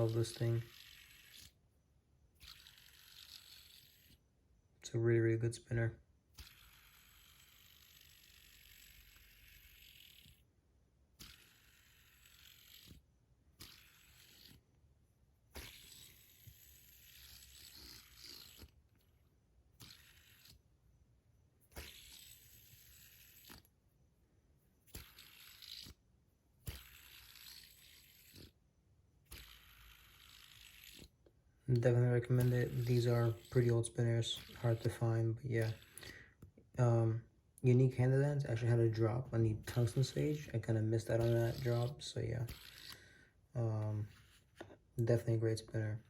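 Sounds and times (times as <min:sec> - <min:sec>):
fidget spinner whirring: 0:00.0 - 0:46.0
fidget spinner click: 0:02.4 - 0:04.2, 0:06.4 - 0:10.5, 0:11.1 - 0:14.7, 0:15.6 - 0:19.1, 0:19.7 - 0:20.7, 0:21.6 - 0:23.7, 0:24.9 - 0:26.0, 0:26.6 - 0:28.6, 0:29.3 - 0:36.5, 0:39.5 - 0:43.0.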